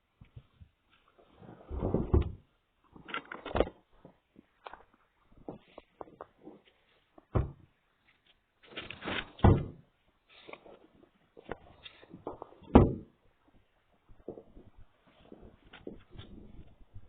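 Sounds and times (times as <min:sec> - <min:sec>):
heavy thuds and knocks: 0:07.3 - 0:07.7.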